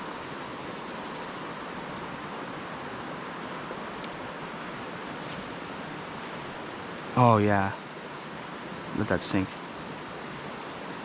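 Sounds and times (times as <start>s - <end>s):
creek water flowing over rocks: 0.0s - 11.0s.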